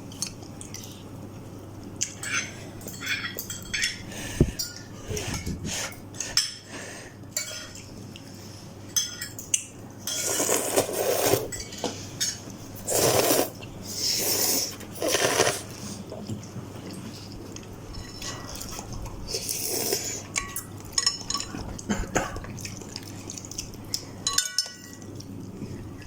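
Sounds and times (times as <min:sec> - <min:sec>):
cutlery clinking against bowl: 0:02.0 - 0:04.9, 0:07.3 - 0:07.9, 0:08.9 - 0:12.5, 0:17.9 - 0:18.9, 0:20.2 - 0:22.7, 0:24.2 - 0:25.2.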